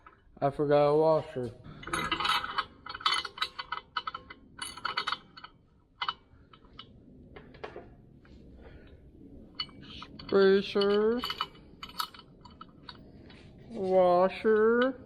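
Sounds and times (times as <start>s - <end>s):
small metal hardware clinking: 1.8s - 6.9s, 9.5s - 13.1s.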